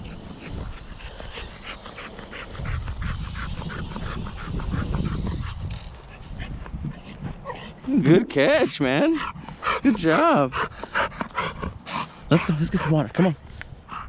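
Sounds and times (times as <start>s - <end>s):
low rumble: 0.0s - 8.0s
dog panting: 0.0s - 14.0s.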